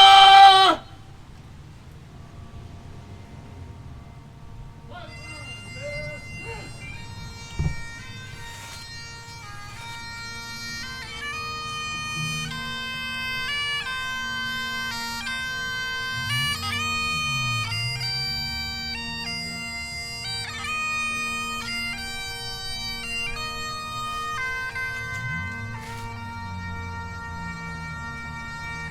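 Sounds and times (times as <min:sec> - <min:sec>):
bagpipes playing a melody: 0:00.0 - 0:01.3, 0:02.0 - 0:28.9.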